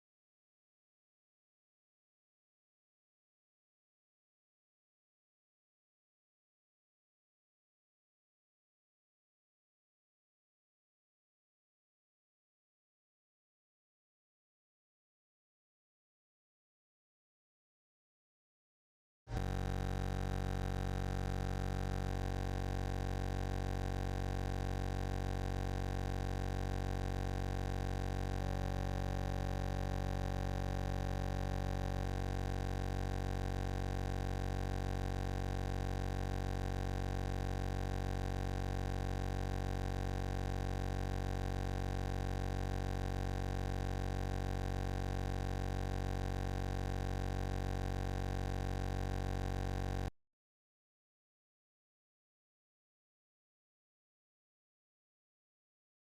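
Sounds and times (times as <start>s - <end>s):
electronic buzzing drone: 19.3s - 50.1s.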